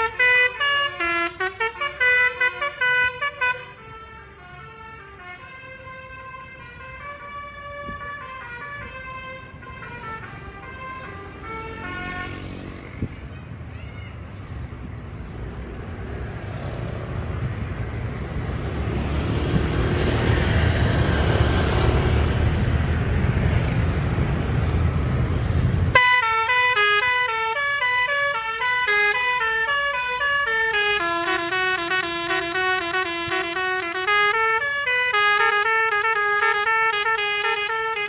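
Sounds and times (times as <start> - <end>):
multi-tone bus horn tune: 0.0 - 13.0, 25.5 - 38.0
heavy vehicle engine rumble: 5.2 - 26.5.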